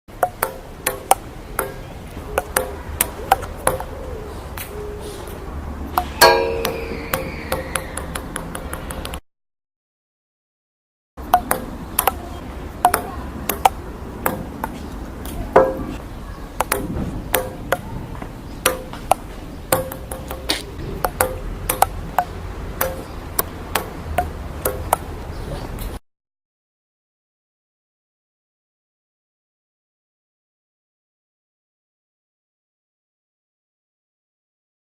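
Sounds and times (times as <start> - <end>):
table tennis ball bouncing: 0.2 - 3.9, 5.9 - 9.2, 11.2 - 16.0, 16.6 - 17.9, 18.6 - 25.2
table tennis rally: 0.2 - 3.9, 5.9 - 9.2, 11.2 - 25.9.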